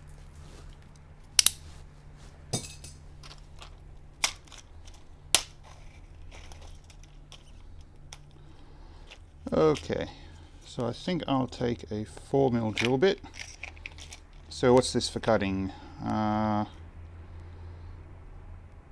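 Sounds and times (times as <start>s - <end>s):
drill bits clicking and clinking: 12.6s - 14.6s.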